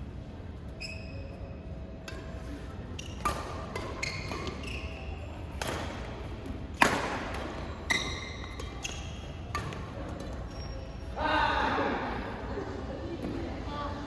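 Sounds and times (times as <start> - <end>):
shoes squeaking on court floor: 0.7 - 1.7, 2.4 - 6.4, 7.0 - 11.2
racket hitting shuttlecock: 2.1 - 4.7, 5.5 - 6.2, 6.8 - 10.4.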